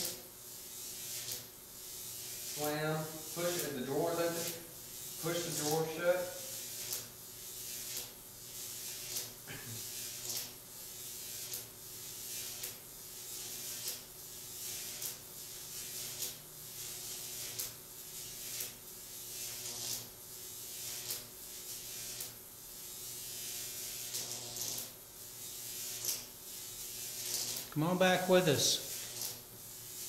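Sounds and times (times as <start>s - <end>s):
low electrical hum: 0.0s - 30.0s
soft pulsing hiss: 2.5s - 6.6s.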